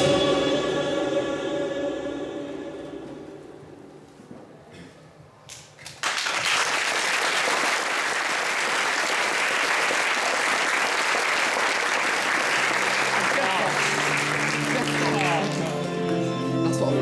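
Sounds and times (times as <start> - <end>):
audience applauding: 5.8 - 17.0.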